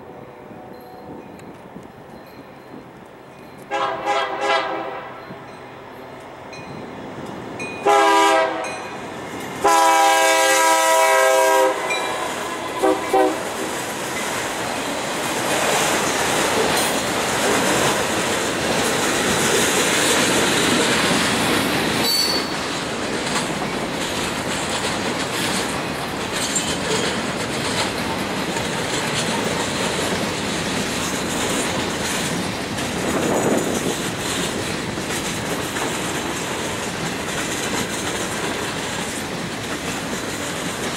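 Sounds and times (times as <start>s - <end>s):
train wheels rumbling on rails: 0.0s - 40.9s
locomotive air horn: 3.7s - 5.4s, 7.8s - 8.8s, 9.6s - 13.7s
wheel squeal: 22.0s - 22.6s.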